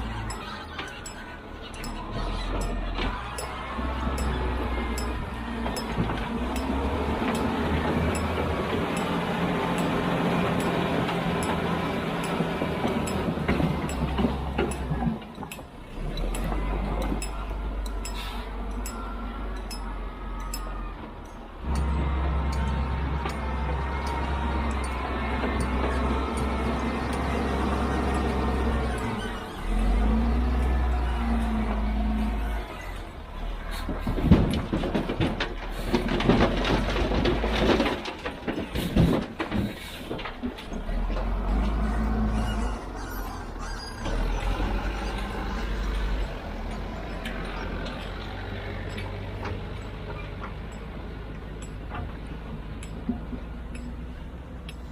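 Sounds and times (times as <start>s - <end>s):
machinery engine low drone: 0.0s - 37.1s
metal clanks and knocks: 0.2s - 29.4s, 33.8s - 41.9s, 46.1s - 54.9s
metallic clinks and knocks: 13.0s - 27.3s.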